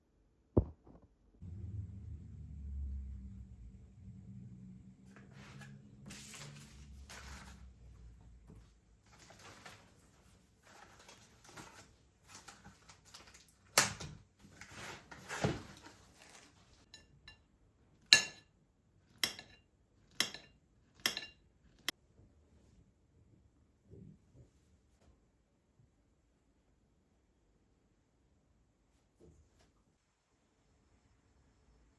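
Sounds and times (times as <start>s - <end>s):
kitchenware rustling and scraping: 5.1s - 17.3s, 19.1s - 21.9s
utensil clinking on a dish: 18.1s - 18.5s, 19.2s - 21.9s.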